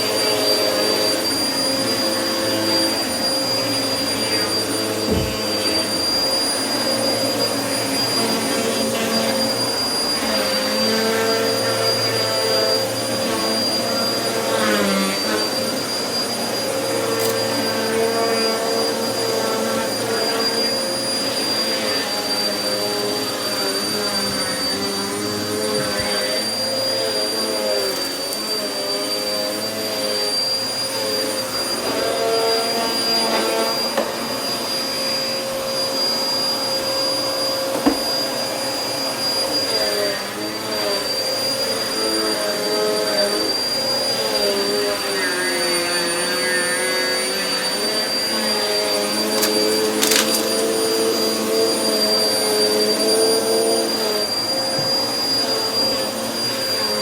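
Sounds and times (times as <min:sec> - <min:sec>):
vacuum cleaner running on carpet: 0:00.0 - 0:57.0
sharp click: 0:49.4 - 0:50.5.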